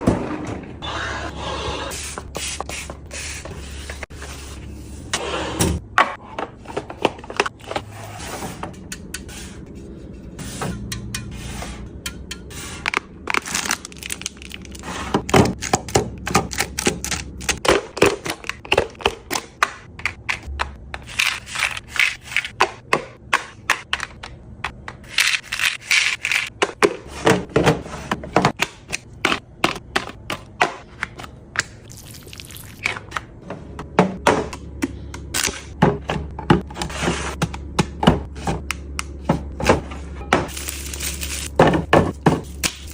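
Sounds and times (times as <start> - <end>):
packaging rustling: 13.3 - 14.8.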